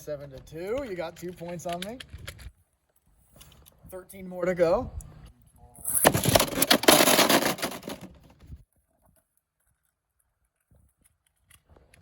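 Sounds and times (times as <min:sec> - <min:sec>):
spinning tops whirring and clattering: 0:06.0 - 0:08.1.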